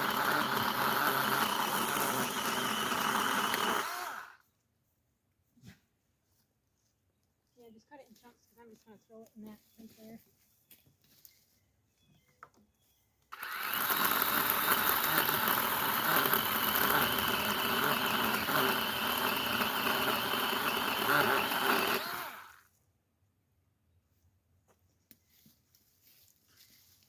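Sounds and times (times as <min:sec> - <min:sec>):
power saw cutting wood: 0:00.0 - 0:04.4, 0:13.3 - 0:22.6.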